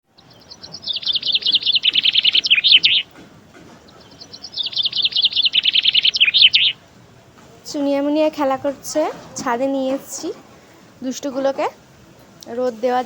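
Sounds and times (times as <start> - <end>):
budgerigars chirping: 0.1 - 6.9.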